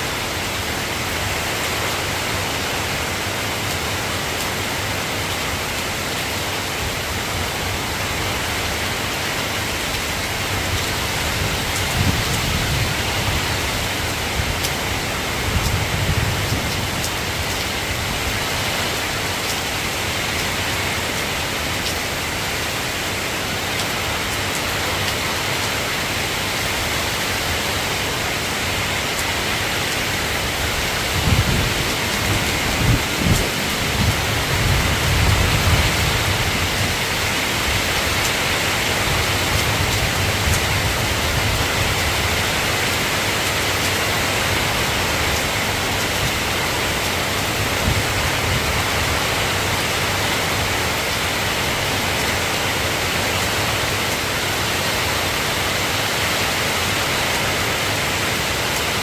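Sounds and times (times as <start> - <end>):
soft rain falling: 0.0 - 59.0
distant thunder rumbles: 31.1 - 37.3.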